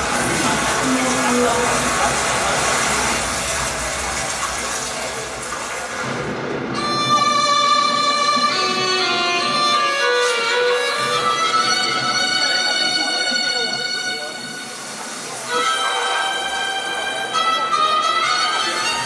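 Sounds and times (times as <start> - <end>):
violin melody of held notes: 6.8 - 19.0.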